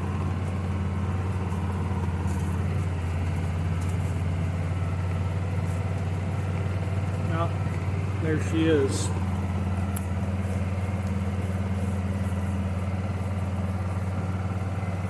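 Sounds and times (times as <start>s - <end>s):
vehicle engine running: 0.0s - 15.0s.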